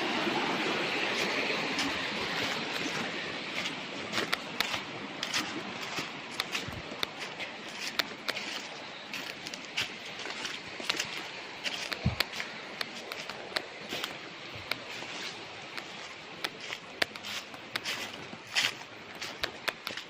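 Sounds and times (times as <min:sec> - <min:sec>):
river water flowing: 0:00.0 - 0:20.0
sharp clicks and crunches: 0:03.6 - 0:05.5, 0:06.3 - 0:15.0, 0:15.7 - 0:20.0.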